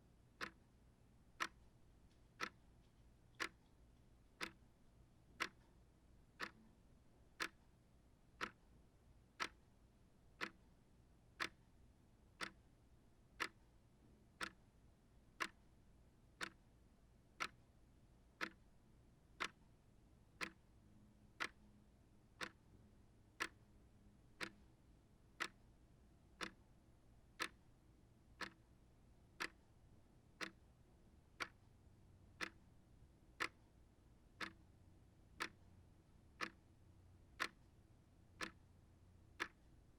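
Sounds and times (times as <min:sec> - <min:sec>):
shelf clock ticking: 0:00.4 - 0:00.6, 0:01.4 - 0:01.7, 0:02.4 - 0:02.6, 0:03.3 - 0:03.6, 0:04.4 - 0:04.6, 0:05.4 - 0:05.7, 0:06.4 - 0:06.6, 0:07.4 - 0:07.6, 0:08.4 - 0:08.6, 0:09.4 - 0:09.6, 0:10.4 - 0:10.6, 0:11.4 - 0:11.6, 0:12.4 - 0:12.6, 0:13.4 - 0:13.6, 0:14.4 - 0:14.6, 0:15.4 - 0:15.6, 0:16.4 - 0:16.6, 0:17.4 - 0:17.6, 0:18.4 - 0:18.6, 0:20.4 - 0:20.6, 0:22.4 - 0:22.6, 0:23.4 - 0:23.6, 0:24.4 - 0:24.6, 0:25.4 - 0:25.6, 0:26.4 - 0:26.6, 0:27.4 - 0:27.6, 0:28.4 - 0:28.6, 0:29.4 - 0:29.7, 0:30.4 - 0:30.7, 0:32.4 - 0:32.7, 0:33.4 - 0:33.6, 0:34.4 - 0:34.6, 0:35.4 - 0:35.6, 0:36.4 - 0:36.6, 0:37.4 - 0:37.7, 0:38.4 - 0:38.6, 0:39.4 - 0:39.7.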